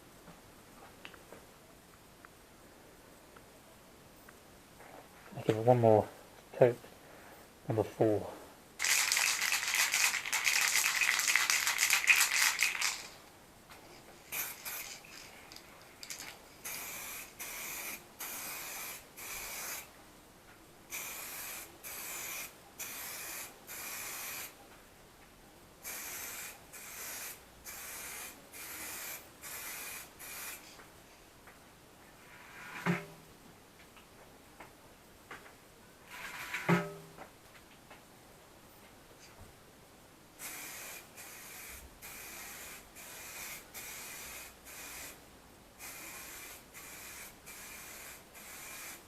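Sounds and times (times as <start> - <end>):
aerosol can mixing ball rattling: 8.8 - 13.2, 14.3 - 16.4
spray can hissing bursts: 8.8 - 13.2, 14.3 - 15.3, 16.0 - 19.9, 20.9 - 24.6, 25.8 - 30.6, 40.4 - 45.2, 45.8 - 49.0.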